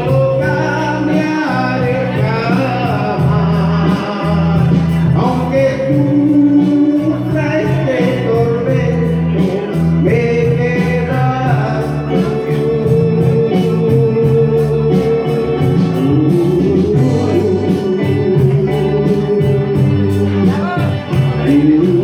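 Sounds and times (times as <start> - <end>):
person singing long notes: 0.0 - 22.0
regular beat: 0.0 - 22.0
stepping bass line: 0.0 - 22.0.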